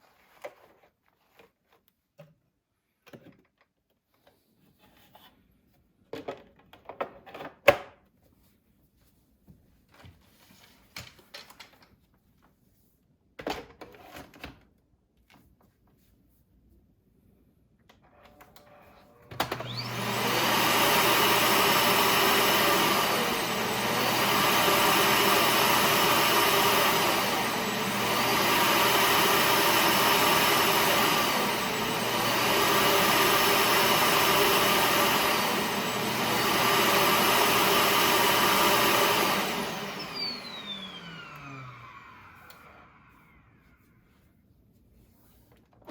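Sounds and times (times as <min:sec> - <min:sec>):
cordless vacuum running: 0:18.3 - 0:44.0.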